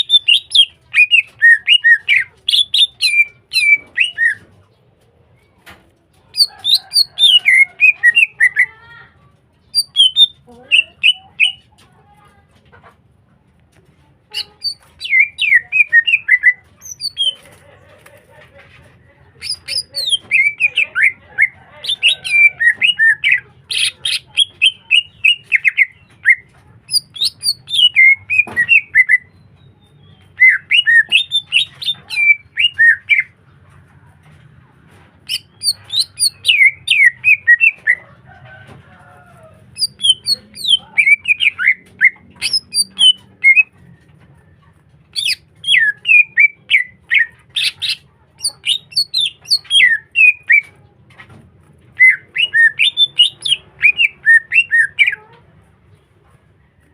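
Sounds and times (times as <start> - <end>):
bird chirping and whistling: 0.0 - 4.4, 6.4 - 8.6, 9.7 - 11.6, 14.4 - 17.4, 19.4 - 29.4, 30.2 - 33.3, 35.3 - 38.0, 39.8 - 43.7, 45.2 - 50.7, 52.0 - 55.2.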